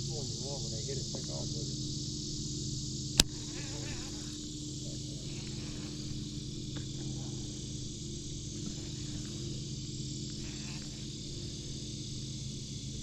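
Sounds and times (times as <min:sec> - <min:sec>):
crickets chirping: 0:00.0 - 0:13.0
steady low hum: 0:00.0 - 0:13.0
sharp click: 0:03.1 - 0:03.4.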